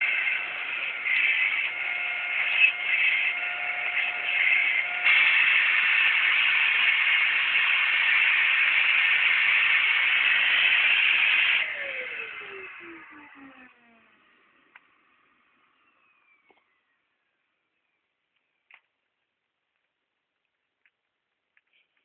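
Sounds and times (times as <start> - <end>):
vacuum cleaner running: 0.0 - 17.1
motor winding down whine: 0.0 - 18.7.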